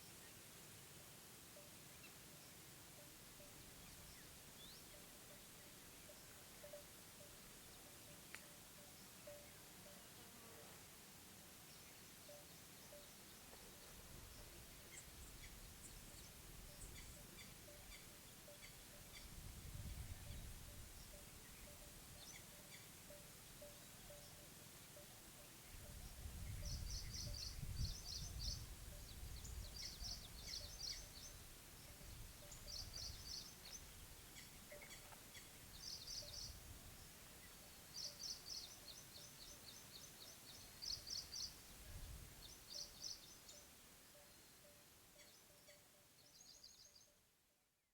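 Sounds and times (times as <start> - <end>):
faint outdoor ambience: 0.0 - 47.9.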